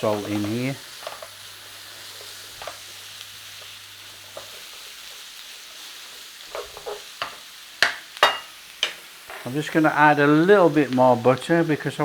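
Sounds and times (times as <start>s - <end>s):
vegetables sizzling in a frying pan: 0.0s - 12.0s.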